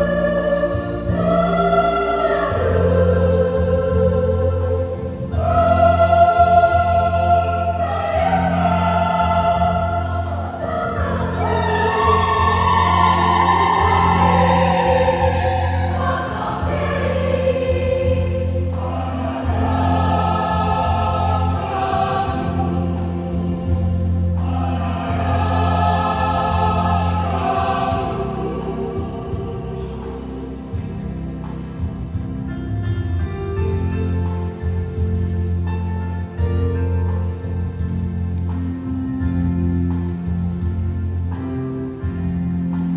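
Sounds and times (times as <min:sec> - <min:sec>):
choir singing a hymn: 0:00.0 - 0:33.0.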